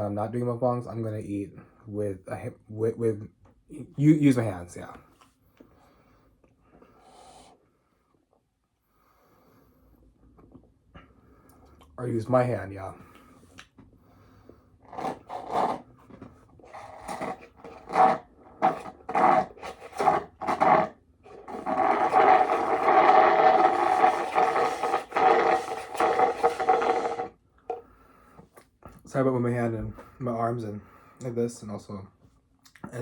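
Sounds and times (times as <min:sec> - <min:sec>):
continuous rubbing: 0:14.8 - 0:27.8
scrapes on microphone: 0:14.9 - 0:27.3.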